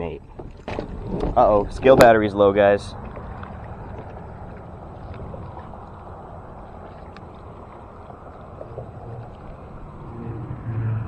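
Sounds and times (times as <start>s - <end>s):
water: 0.0s - 11.0s
wind: 0.0s - 11.0s
faint clicks: 2.8s - 10.2s.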